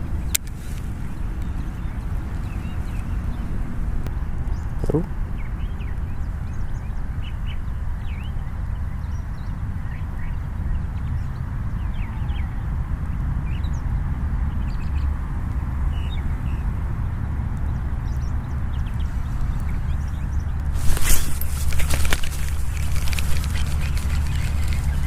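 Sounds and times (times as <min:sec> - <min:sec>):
wind rumble on microphone: 0:00.0 - 0:25.0
birds chirping: 0:17.6 - 0:25.0.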